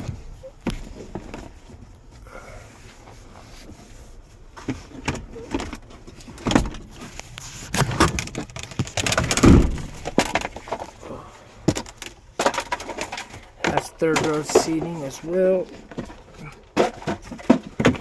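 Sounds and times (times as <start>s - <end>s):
car doors clicking and thudding: 5.0s - 7.1s, 7.8s - 10.6s.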